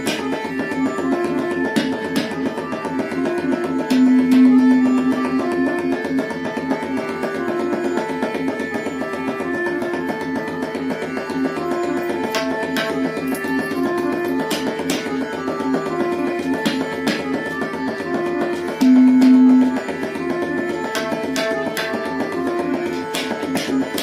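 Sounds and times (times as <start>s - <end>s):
tabla strokes: 0.0s - 24.0s
held melodic notes: 3.8s - 6.3s, 18.6s - 23.4s.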